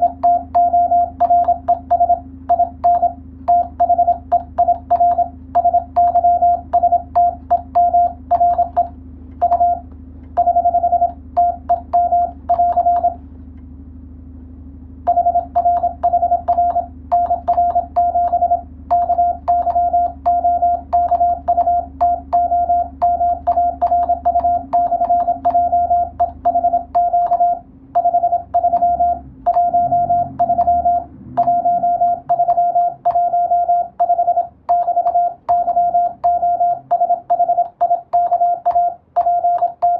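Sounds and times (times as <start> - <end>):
morse code tone: 0.0 - 13.2, 15.1 - 39.9.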